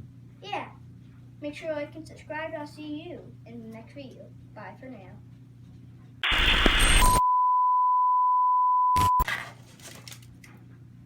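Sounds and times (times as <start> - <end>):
loud burst of noise: 6.2 - 7.2
steady electronic beep: 6.2 - 9.2.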